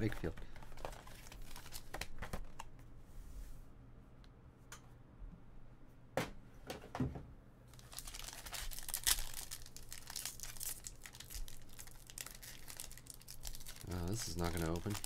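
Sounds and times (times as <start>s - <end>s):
plastic wrapper crinkling and tearing: 0.0s - 2.7s, 7.7s - 15.0s.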